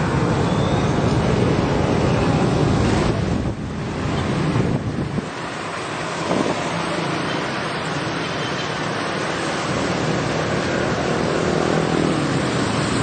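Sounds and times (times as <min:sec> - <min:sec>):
road traffic rushing past: 0:00.0 - 0:13.0
wind buffeting microphone: 0:01.0 - 0:07.0.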